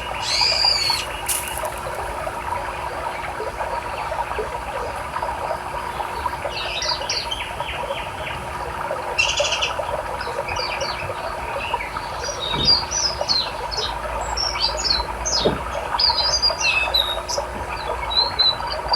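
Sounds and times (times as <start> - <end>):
buzzy bird trill: 0.0 - 2.0
river rushing: 0.0 - 2.4
songbirds chirping: 0.0 - 2.5.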